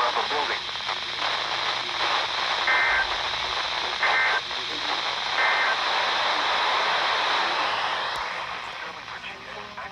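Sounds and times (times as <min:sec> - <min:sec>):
radio static hiss: 0:00.0 - 0:09.9.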